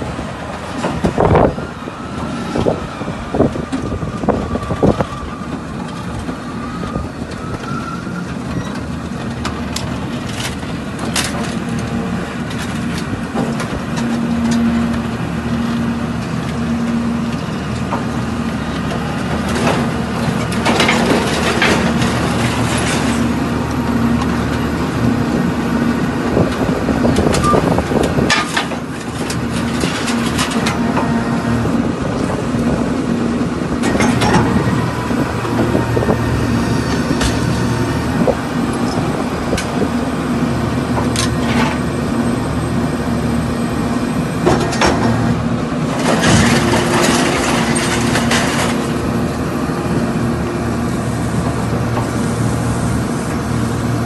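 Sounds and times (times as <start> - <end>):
hydraulic power unit hum: 0.0 - 54.0
scrap metal cracking and crunching: 19.0 - 23.8, 28.0 - 31.3, 44.5 - 49.3.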